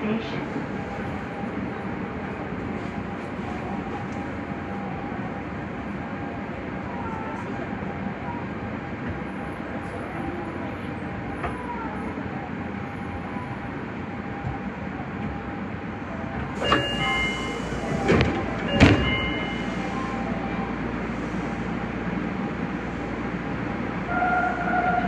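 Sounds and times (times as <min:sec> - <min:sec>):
sliding doors thudding shut: 0:16.6 - 0:19.6
door signal tones: 0:16.6 - 0:20.2.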